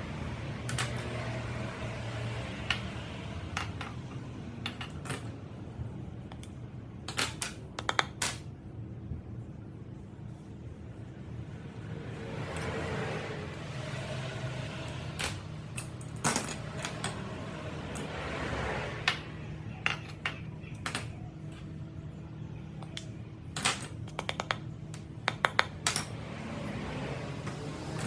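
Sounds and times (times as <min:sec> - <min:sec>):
steady low hum: 0:00.0 - 0:28.0
small metal parts clinking: 0:00.7 - 0:01.1, 0:04.6 - 0:05.3, 0:14.9 - 0:17.3, 0:19.8 - 0:21.6, 0:22.9 - 0:26.2.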